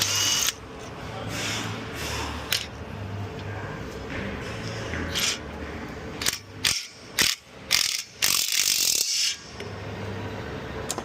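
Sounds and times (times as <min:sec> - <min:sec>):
mechanical ratcheting clicks: 0:06.2 - 0:09.4.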